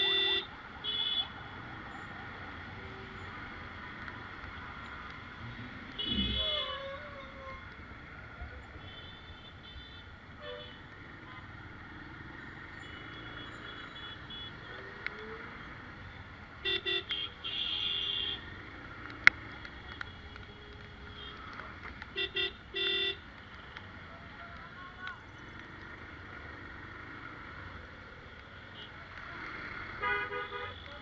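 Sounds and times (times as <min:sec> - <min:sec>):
vehicle horns honking: 0:00.0 - 0:01.3, 0:06.0 - 0:07.5, 0:22.1 - 0:23.2, 0:30.0 - 0:31.0
street noise: 0:00.0 - 0:31.0.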